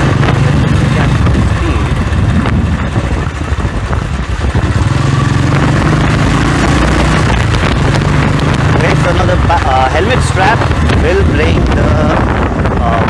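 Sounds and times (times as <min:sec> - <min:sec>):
motorcycle engine running: 0:00.0 - 0:13.0
wind rushing over microphone: 0:00.0 - 0:13.0.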